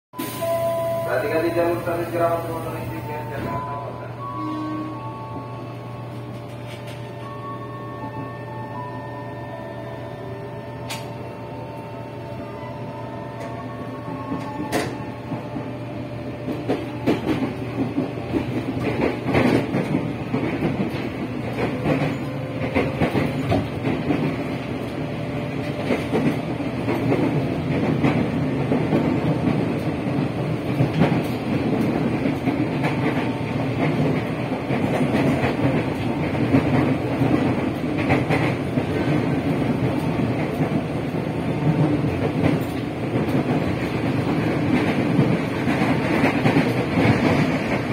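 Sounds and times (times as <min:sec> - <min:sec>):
electric train running noise: 0:00.3 - 0:47.9.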